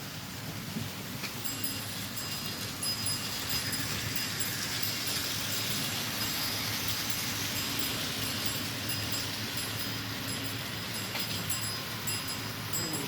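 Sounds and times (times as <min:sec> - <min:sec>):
toy car electric motors whirring: 0:01.9 - 0:12.2.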